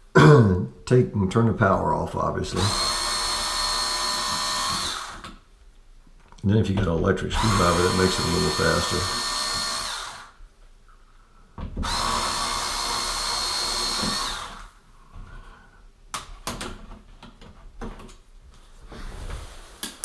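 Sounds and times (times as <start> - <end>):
electric screwdriver running: 2.6 - 5.2, 7.4 - 10.4, 11.8 - 14.7.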